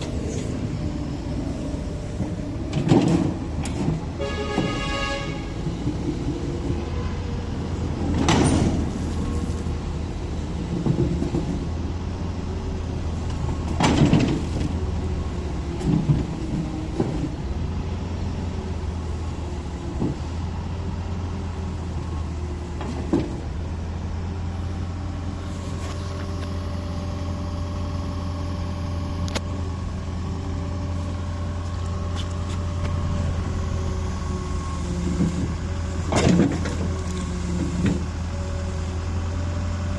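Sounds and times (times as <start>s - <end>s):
excavator diesel engine running: 0.0s - 39.9s
sharp knocks and clunks: 2.2s - 6.9s, 13.3s - 14.9s.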